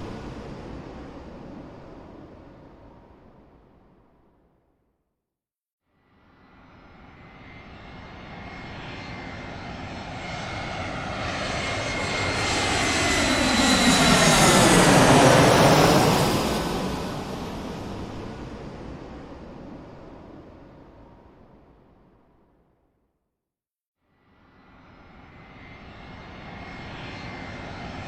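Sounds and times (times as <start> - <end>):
airplane flying overhead: 0.0 - 3.7, 6.0 - 22.0, 24.1 - 28.0.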